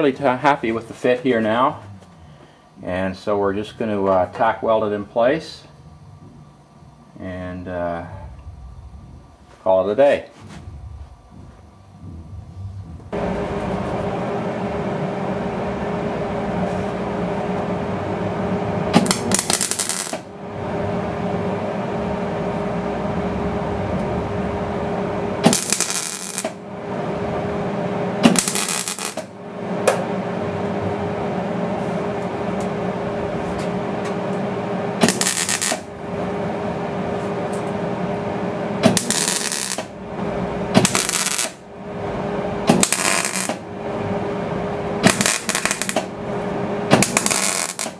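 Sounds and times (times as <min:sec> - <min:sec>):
steady hum: 0:00.0 - 0:47.9
welder crackling bursts: 0:18.9 - 0:20.3, 0:25.4 - 0:26.6, 0:28.2 - 0:29.4, 0:35.0 - 0:35.9, 0:38.8 - 0:40.0, 0:40.7 - 0:41.6, 0:42.6 - 0:43.7, 0:45.0 - 0:46.1, 0:46.9 - 0:47.9.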